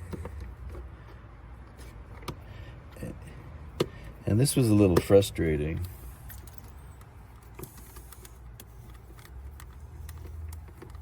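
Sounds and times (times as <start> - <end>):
small hard items clicking: 6.3 - 11.0.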